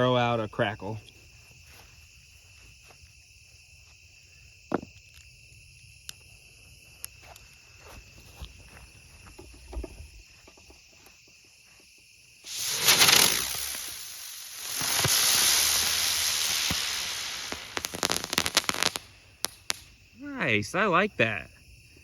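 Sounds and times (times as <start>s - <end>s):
crickets chirping: 0.0s - 22.0s
firework igniting with loud hiss: 12.4s - 20.1s.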